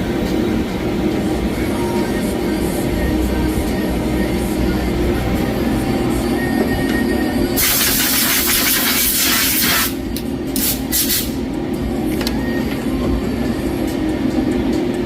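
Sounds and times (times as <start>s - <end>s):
lathe machining: 0.0s - 15.0s
steady hum: 0.0s - 15.0s
spray hissing: 7.6s - 10.0s.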